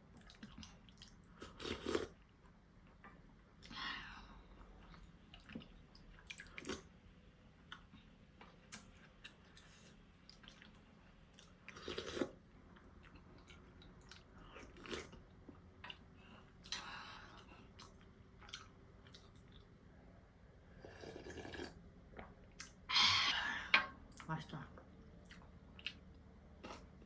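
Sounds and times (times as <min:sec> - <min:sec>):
chewing noodles: 0:00.2 - 0:02.4, 0:04.8 - 0:06.9, 0:07.7 - 0:19.8, 0:20.7 - 0:22.8.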